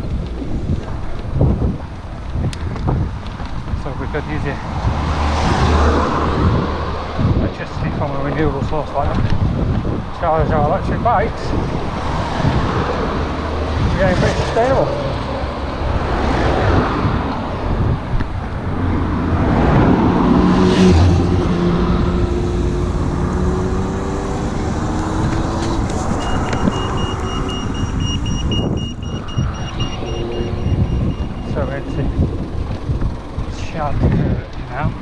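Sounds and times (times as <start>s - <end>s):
road noise: 0.0s - 35.0s
vehicle passing close: 3.8s - 7.5s, 10.9s - 34.2s.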